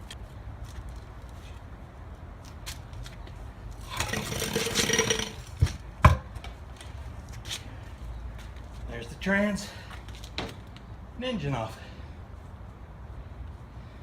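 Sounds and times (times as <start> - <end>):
metal scraping and rattling: 3.8 - 5.7.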